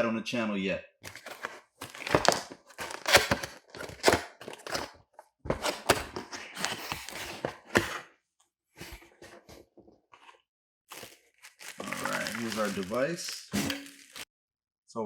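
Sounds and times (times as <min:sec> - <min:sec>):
cardboard packaging rustling: 0:01.0 - 0:08.0, 0:10.2 - 0:14.3.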